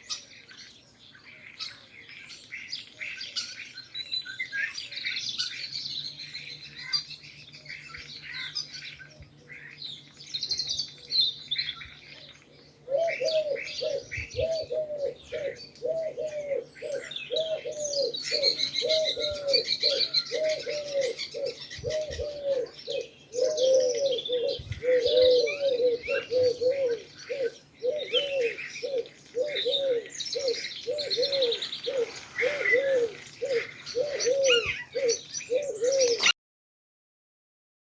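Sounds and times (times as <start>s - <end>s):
small birds chirping: 0.0s - 36.4s
pigeons cooing: 10.5s - 36.4s.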